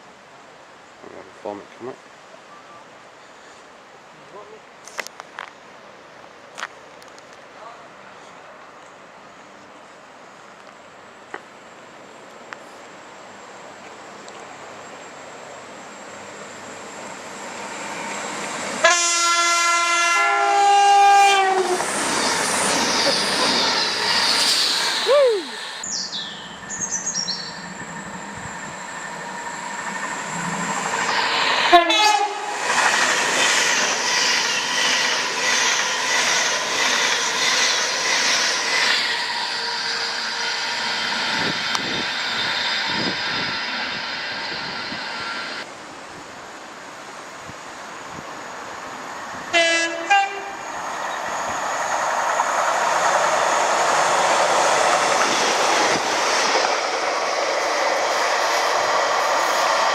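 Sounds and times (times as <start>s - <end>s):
train rushing past: 14.5s - 45.7s, 46.9s - 59.9s
two-tone train horn: 18.8s - 21.8s, 31.7s - 32.6s, 49.5s - 50.6s.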